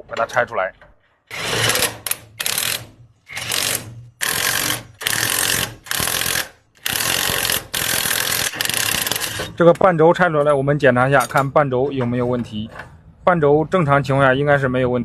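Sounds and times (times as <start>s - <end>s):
impact wrench rattling: 1.3s - 9.6s.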